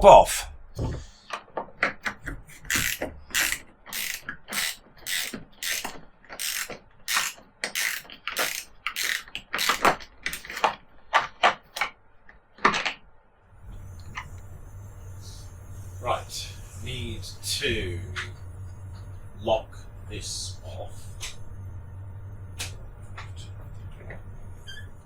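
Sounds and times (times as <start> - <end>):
ratchet rasping: 2.5 - 10.7.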